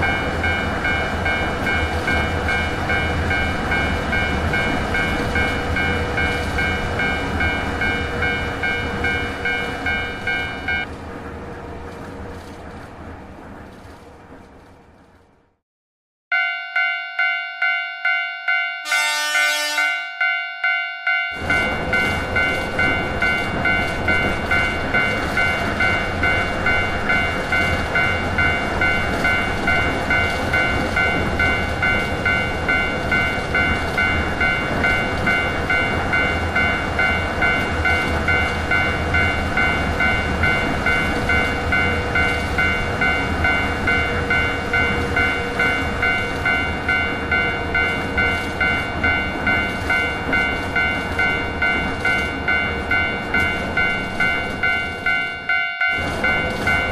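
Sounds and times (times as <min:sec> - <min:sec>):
passing electric train rumble: 0:00.0 - 0:15.6, 0:16.4 - 0:56.9
level crossing bell ringing: 0:16.3 - 0:56.9.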